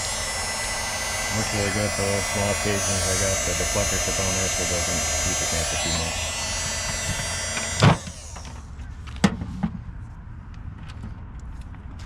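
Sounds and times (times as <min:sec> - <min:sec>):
heat pen motor whine: 0:00.0 - 0:08.8.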